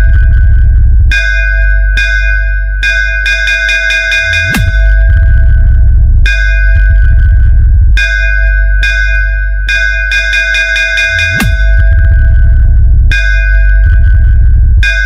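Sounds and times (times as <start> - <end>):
bell-like electronic riff: 0.0 - 15.0
heavy sub-bass: 0.0 - 15.0
falling bass sweep: 4.4 - 8.2, 11.4 - 15.0.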